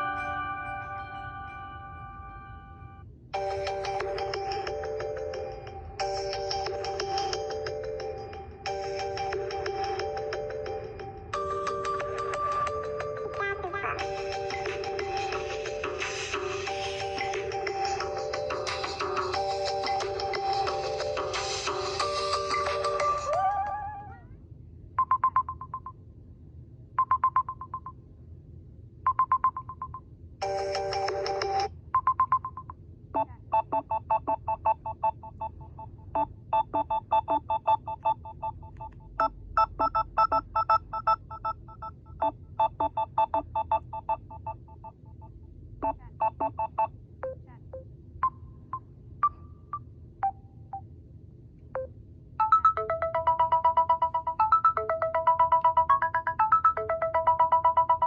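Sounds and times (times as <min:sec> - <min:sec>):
electronic phone ringtones: 0:00.0 - 0:13.4, 0:14.0 - 0:23.7, 0:30.4 - 0:32.5, 0:39.6 - 0:45.0, 0:52.4 - 0:58.0.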